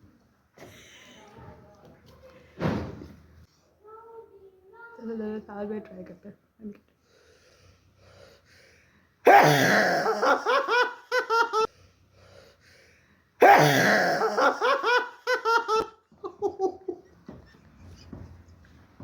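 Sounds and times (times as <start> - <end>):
people laughing hard: 10.0 - 11.7, 14.2 - 17.2.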